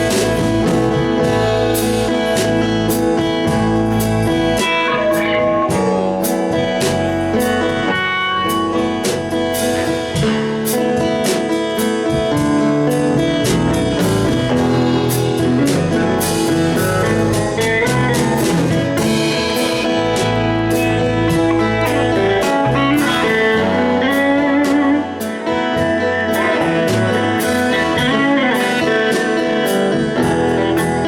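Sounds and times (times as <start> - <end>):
drum beat: 0.0 - 31.0
guitar: 0.0 - 31.0
live band: 0.0 - 31.0.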